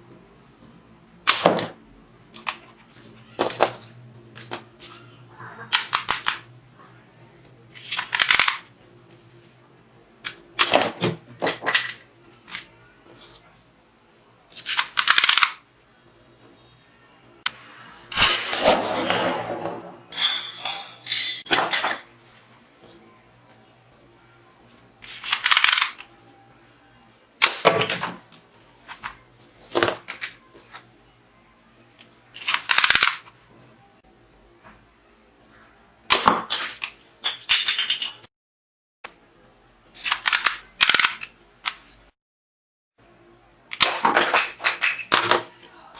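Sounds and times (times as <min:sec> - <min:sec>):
plastic toy gun clicks: 0:05.7 - 0:06.4, 0:07.8 - 0:08.6, 0:14.6 - 0:15.6, 0:25.1 - 0:26.1, 0:32.4 - 0:33.2, 0:40.0 - 0:41.3
plastic pins clattering: 0:43.8 - 0:45.5.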